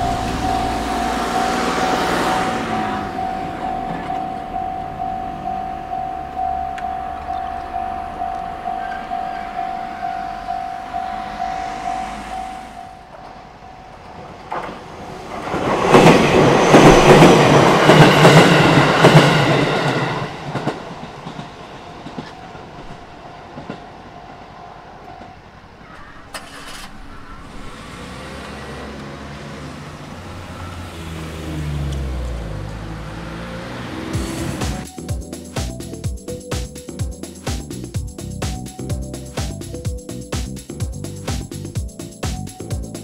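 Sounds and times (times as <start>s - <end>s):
train wheels clattering on rails: 0.0s - 5.1s, 13.1s - 24.4s
low engine hum: 0.0s - 14.1s, 26.8s - 34.9s
level crossing bell ringing: 0.0s - 14.3s, 34.8s - 36.6s, 41.8s - 43.0s.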